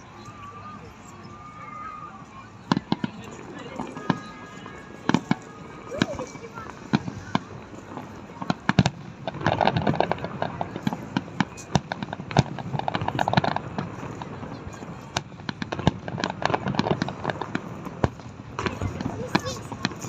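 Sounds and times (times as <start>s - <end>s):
fireworks bangs and crackling: 0.0s - 20.0s.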